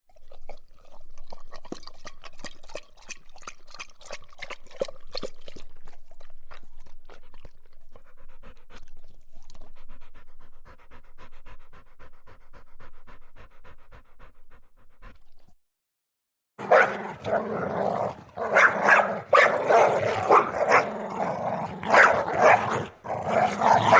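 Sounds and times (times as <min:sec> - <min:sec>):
dog lapping water: 0:00.1 - 0:15.6.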